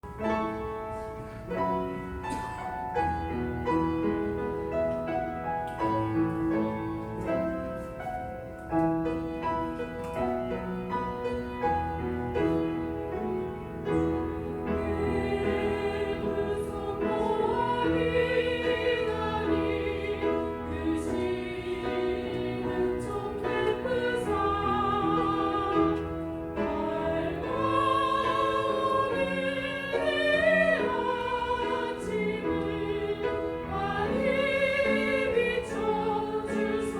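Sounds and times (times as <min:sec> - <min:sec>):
piano accompaniment: 0:00.0 - 0:36.9
choir singing: 0:13.9 - 0:36.9.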